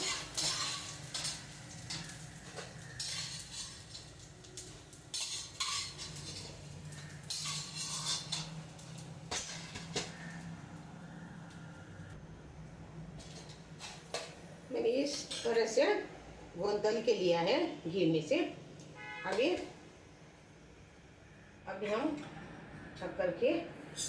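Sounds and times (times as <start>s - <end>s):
metal spoon scraping a pan: 0.0s - 10.5s, 13.2s - 14.4s, 15.1s - 15.8s.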